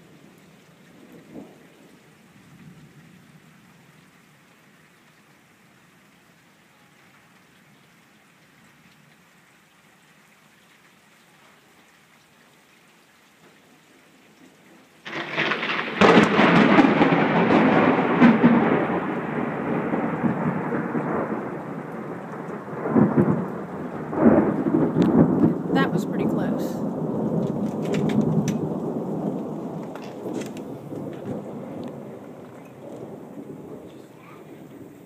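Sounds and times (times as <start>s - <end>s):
light rain: 0.0s - 35.0s
thunder crack rolling: 15.0s - 35.0s.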